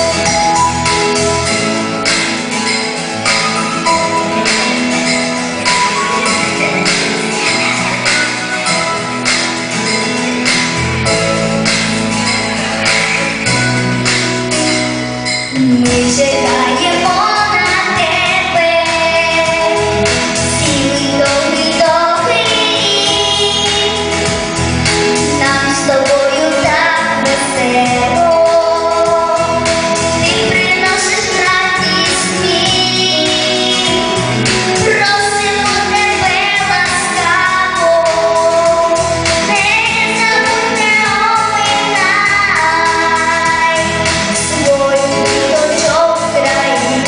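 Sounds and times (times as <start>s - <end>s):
instrumental accompaniment: 0.0s - 47.0s
woman singing: 15.5s - 24.4s, 25.2s - 47.0s.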